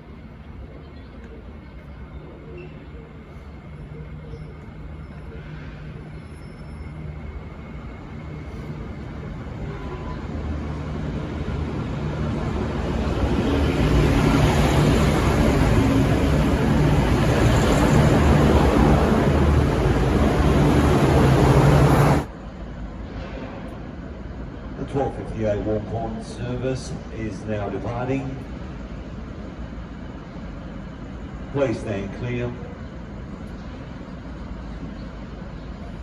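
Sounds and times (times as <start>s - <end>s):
train wheels on rails: 0.0s - 24.8s
diesel train engines: 0.0s - 36.0s.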